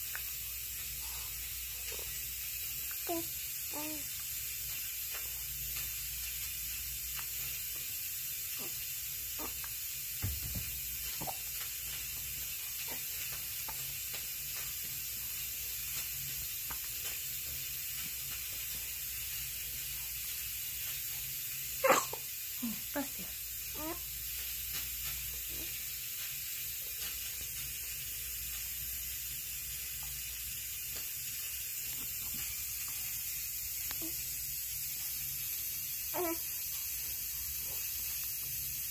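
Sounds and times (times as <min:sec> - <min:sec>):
steady hiss: 0:00.0 - 0:38.9
baby hiccuping: 0:21.8 - 0:22.2.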